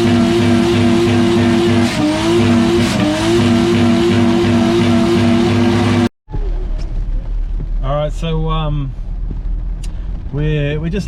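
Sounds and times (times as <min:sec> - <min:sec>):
car engine at high revs: 0:00.0 - 0:07.8.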